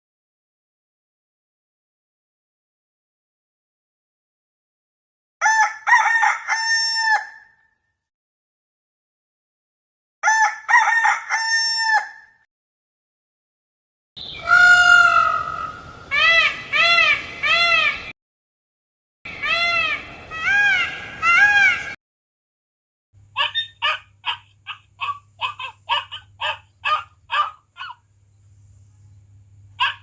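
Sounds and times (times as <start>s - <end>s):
rooster crowing: 5.4s - 7.6s, 10.2s - 12.3s, 14.4s - 15.8s
peacock calling: 14.2s - 18.1s, 19.3s - 22.0s, 23.3s - 28.1s, 29.8s - 30.0s.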